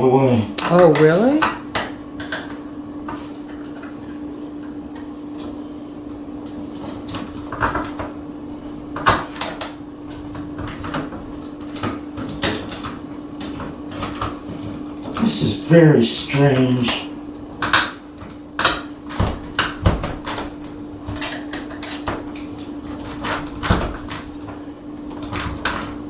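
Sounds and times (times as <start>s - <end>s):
doorknob and latch rattling: 17.4s - 26.0s.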